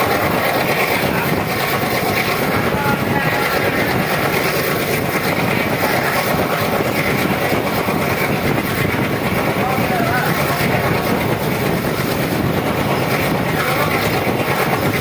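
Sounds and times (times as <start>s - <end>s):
passenger train on track: 0.0s - 15.0s.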